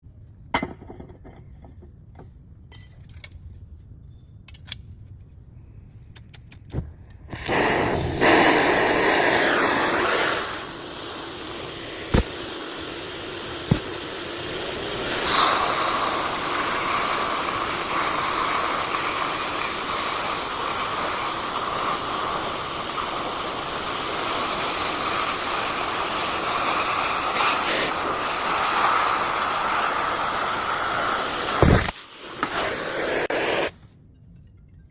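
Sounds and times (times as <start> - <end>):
plasma cutter hissing: 7.3 - 33.8.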